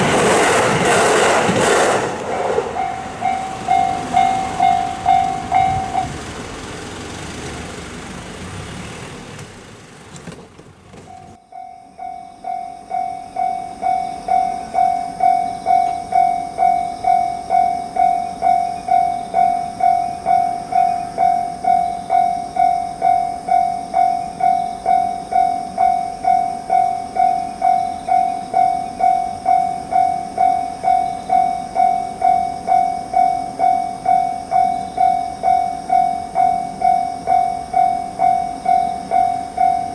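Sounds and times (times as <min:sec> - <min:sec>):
steady rushing noise: 0:00.0 - 0:07.1
level crossing bell ringing: 0:02.5 - 0:06.6, 0:11.1 - 0:22.0, 0:22.6 - 0:39.9.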